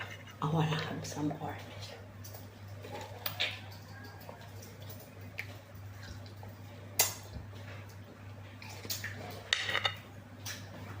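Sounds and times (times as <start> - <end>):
eating clicks and wet smacks: 2.2 - 9.5, 10.4 - 11.0.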